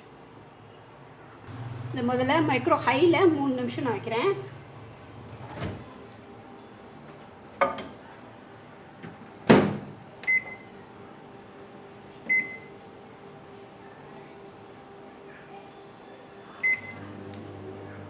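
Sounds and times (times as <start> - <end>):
microwave oven humming: 1.5 - 18.0
short keypad beeps: 12.3 - 12.7, 16.6 - 17.0.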